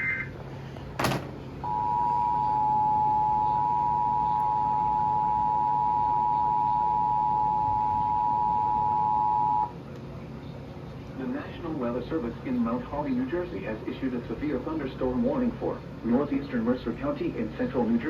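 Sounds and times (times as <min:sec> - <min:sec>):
two-tone alert signal: 0:01.6 - 0:09.7.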